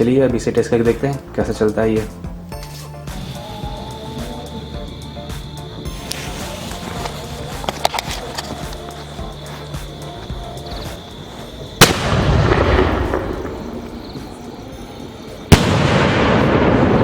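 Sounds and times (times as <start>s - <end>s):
firework bangs: 10.7s - 17.0s.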